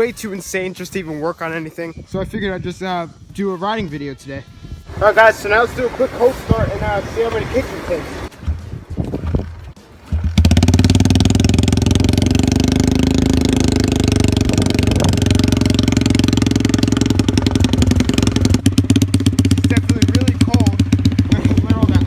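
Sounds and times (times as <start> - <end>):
motorcycle engine kick-started: 8.4 - 22.0.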